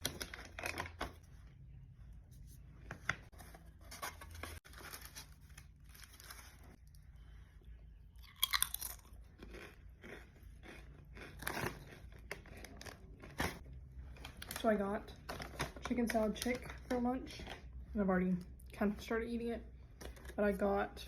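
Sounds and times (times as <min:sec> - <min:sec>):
person chewing crunchy food: 0:08.1 - 0:13.6.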